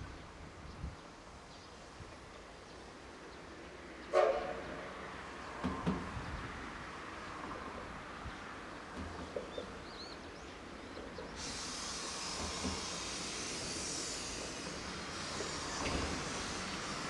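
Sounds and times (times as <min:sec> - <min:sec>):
steam hissing: 0:11.3 - 0:17.0.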